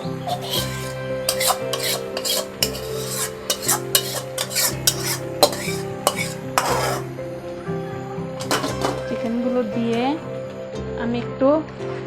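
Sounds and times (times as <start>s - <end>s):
spoon scraping a cooking pot: 0.0s - 7.1s
soft background music: 0.0s - 12.0s.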